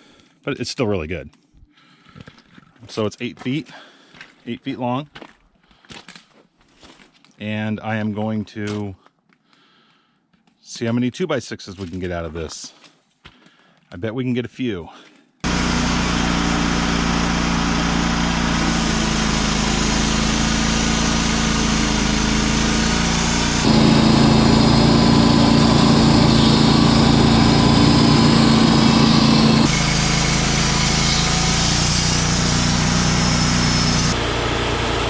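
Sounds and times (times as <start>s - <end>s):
sawmill engine running: 15.5s - 35.0s.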